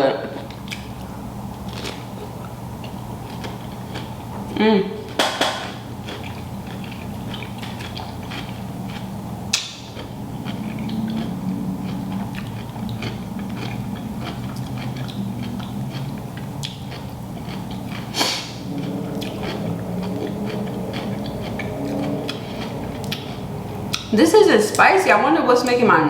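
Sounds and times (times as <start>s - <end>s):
low steady hum: 0.0s - 26.0s
chewing and biting food: 0.4s - 24.2s
wet mouth clicks and smacks: 9.5s - 24.1s.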